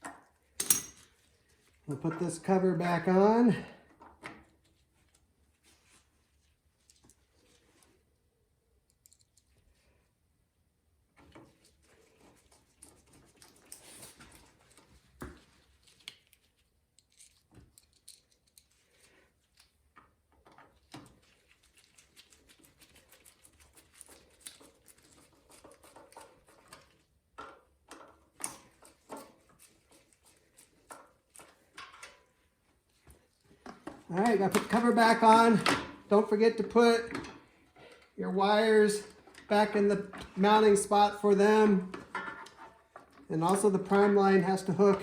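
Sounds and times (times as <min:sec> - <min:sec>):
small parts clicking and knocking: 0:08.8 - 0:09.6, 0:15.8 - 0:29.5.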